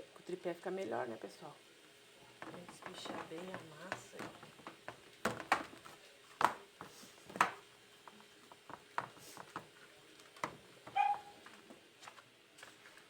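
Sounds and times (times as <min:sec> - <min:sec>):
rolling pin knocking on dough: 0:02.4 - 0:05.8
high squeak: 0:11.0 - 0:11.4.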